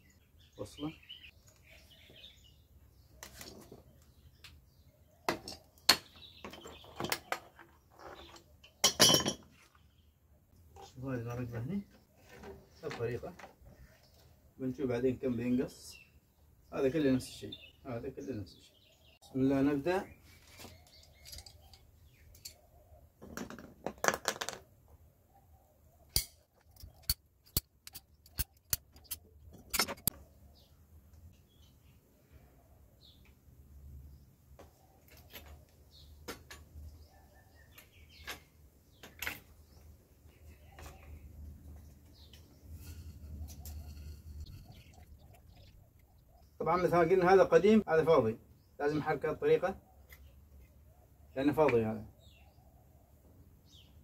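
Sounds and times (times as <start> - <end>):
small parts and tools clicking: 20.9 - 22.6, 26.1 - 30.2
parts rattling: 26.1 - 30.2, 41.8 - 45.7
faint bird chirps: 36.9 - 47.4.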